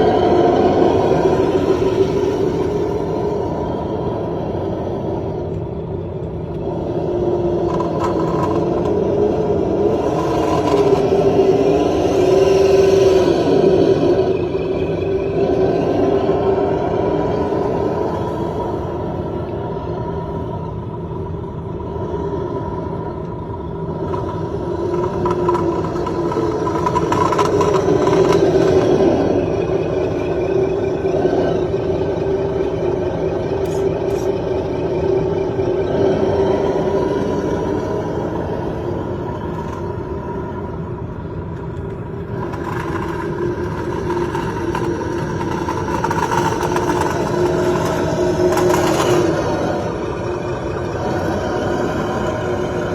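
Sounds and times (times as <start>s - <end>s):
toy truck electric motor whining: 41.6s - 50.0s.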